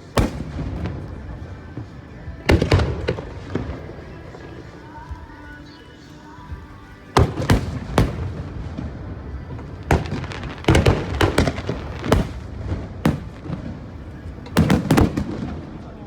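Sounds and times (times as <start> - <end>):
rumbling echo: 6.5 - 16.0.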